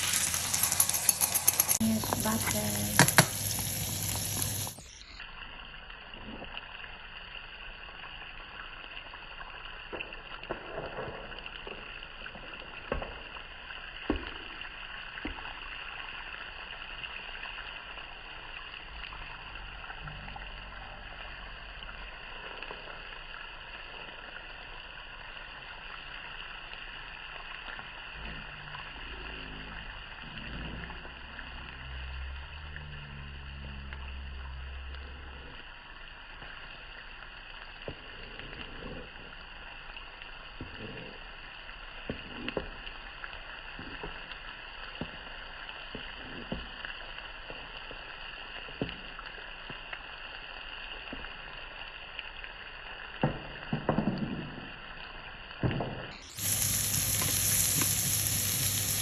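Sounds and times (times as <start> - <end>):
eggs sizzling in a pan: 0.0 - 59.0
utensil clicking against pan: 0.2 - 3.7.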